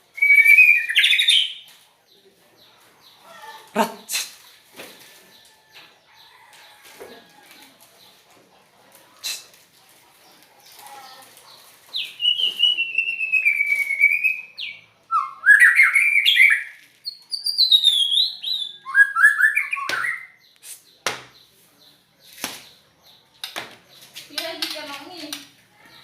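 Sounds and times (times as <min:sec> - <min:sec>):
songbird whistling and warbling: 0:00.1 - 0:01.6, 0:12.0 - 0:20.7.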